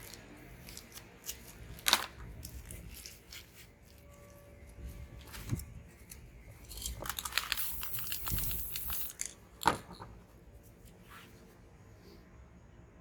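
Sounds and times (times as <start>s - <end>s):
paper crinkling and rustling: 0.0s - 9.0s
spray paint hiss: 7.2s - 9.3s.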